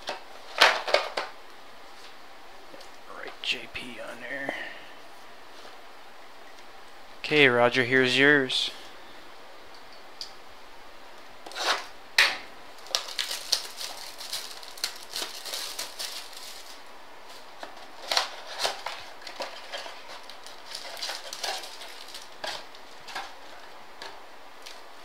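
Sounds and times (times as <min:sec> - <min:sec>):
card packs crinkling and rustling: 0:00.0 - 0:02.2, 0:12.7 - 0:25.0.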